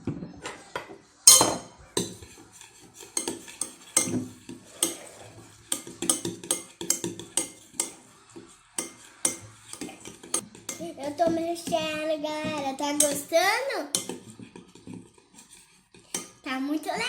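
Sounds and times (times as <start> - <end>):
utensil clinking and scraping bowl: 0.5 - 17.0
utensil stirring slime in bowl: 2.0 - 17.0.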